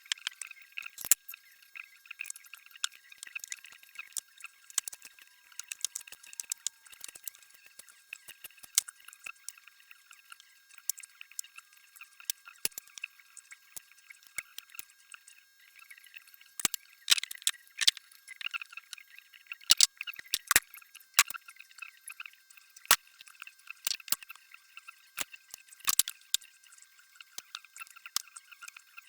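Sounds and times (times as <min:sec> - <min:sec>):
metal tools clicking on engine parts: 0:19.7 - 0:20.6.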